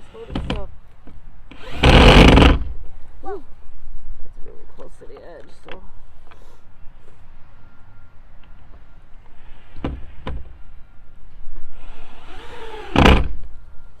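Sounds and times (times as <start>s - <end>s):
cordless drill driving screws: 1.5s - 2.7s, 11.8s - 13.4s.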